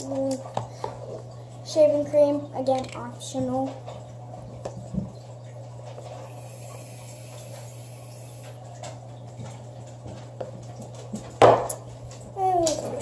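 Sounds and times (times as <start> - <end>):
aerosol can hissing: 6.2 - 8.6.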